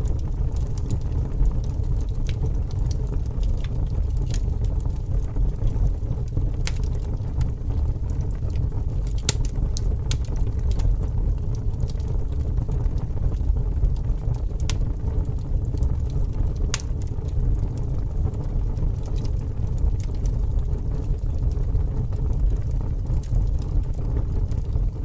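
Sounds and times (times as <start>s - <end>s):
bonfire crackling: 0.0s - 25.0s
low rumble: 0.0s - 25.0s.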